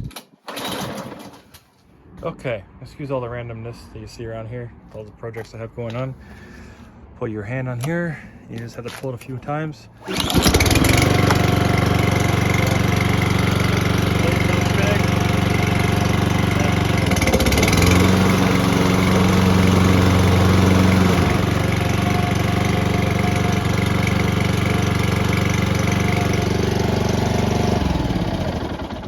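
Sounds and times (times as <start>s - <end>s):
lawn mower engine running: 0.4s - 1.6s, 10.0s - 29.0s.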